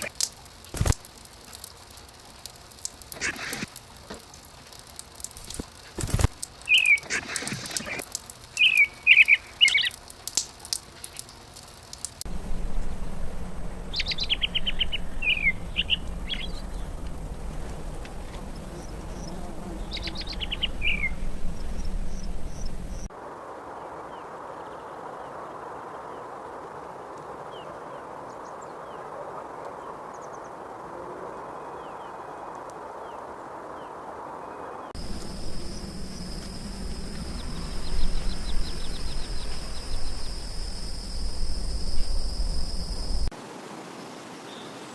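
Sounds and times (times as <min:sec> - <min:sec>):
background hiss: 0:00.0 - 0:44.9
songbirds chirping and trilling: 0:06.4 - 0:10.0, 0:12.3 - 0:23.1, 0:31.4 - 0:43.3.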